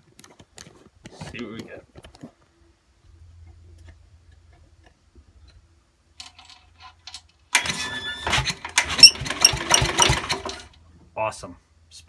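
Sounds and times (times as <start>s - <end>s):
engine cranking fast: 7.6s - 10.8s.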